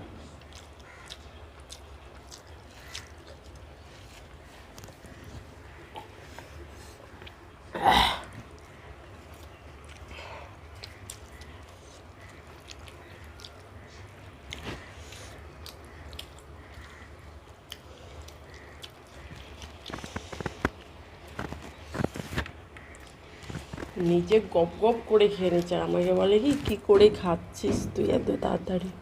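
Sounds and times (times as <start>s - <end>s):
person chewing: 0.4s - 7.6s, 8.4s - 24.0s.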